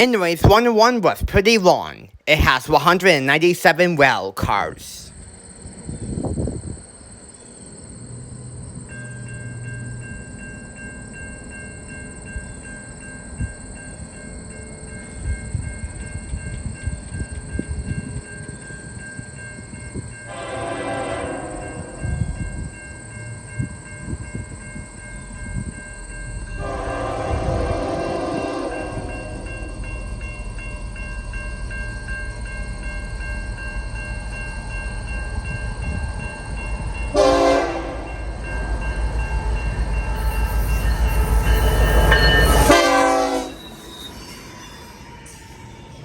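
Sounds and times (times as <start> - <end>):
freight train rumbling past: 0.0 - 46.0
locomotive horn: 20.3 - 22.0, 26.6 - 29.7, 37.1 - 44.1
steady high-pitched tone: 28.3 - 46.0.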